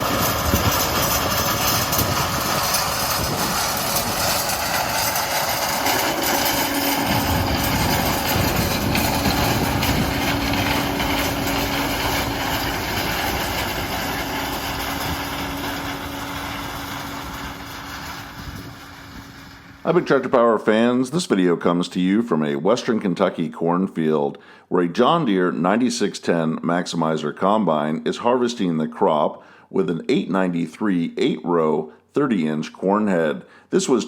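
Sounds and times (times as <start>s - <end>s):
steady hum: 0.0s - 20.3s
combine harvester running: 0.0s - 20.4s.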